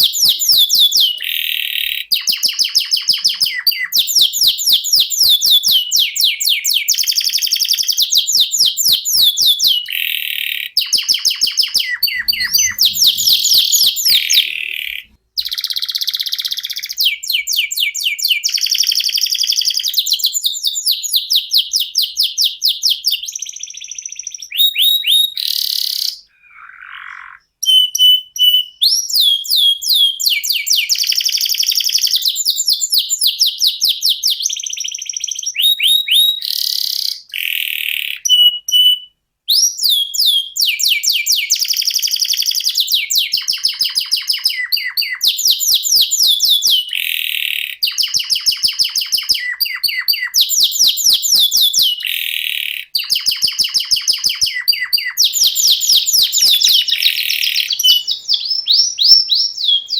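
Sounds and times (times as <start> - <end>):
canary singing trills: 0.0 - 20.9, 33.8 - 59.9.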